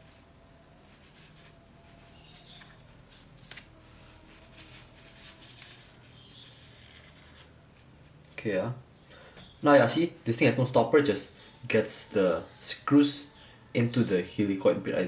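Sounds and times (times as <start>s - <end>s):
tissue rubbing on metal: 0.0s - 8.3s.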